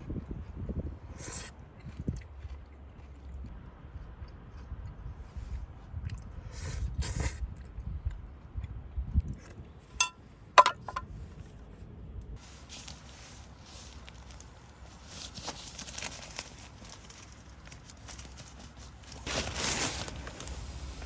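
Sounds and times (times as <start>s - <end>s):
rustling handling noises: 12.4s - 21.0s.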